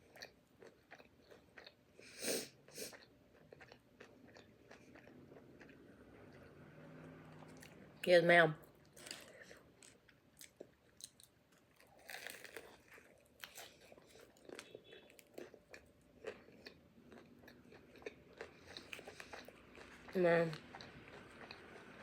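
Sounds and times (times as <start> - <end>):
chewing with wet mouth clicks: 0.0 - 1.8, 2.9 - 6.6, 8.8 - 22.0
pastry crunching: 8.8 - 20.1.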